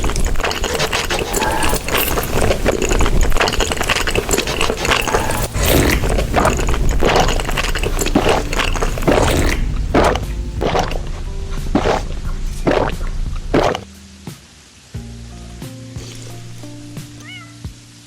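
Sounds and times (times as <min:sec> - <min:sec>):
chewing and crunching: 0:00.0 - 0:13.9
wet clicks and crackles: 0:00.0 - 0:13.9.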